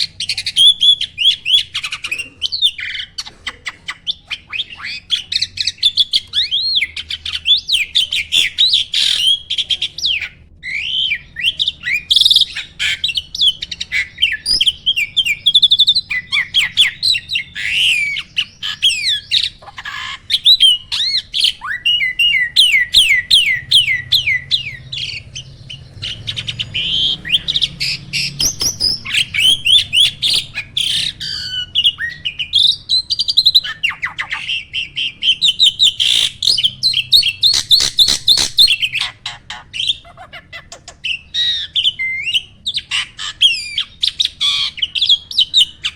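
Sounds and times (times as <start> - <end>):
starling singing: 0.0 - 45.9.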